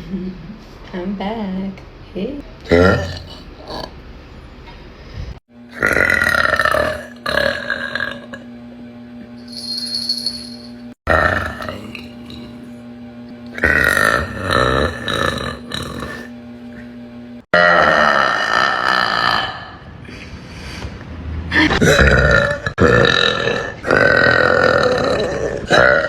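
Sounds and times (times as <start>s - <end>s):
woman burping loudly: 2.7s - 4.0s, 5.7s - 8.4s, 11.1s - 12.7s, 13.5s - 16.3s, 17.5s - 19.9s, 21.6s - 26.0s.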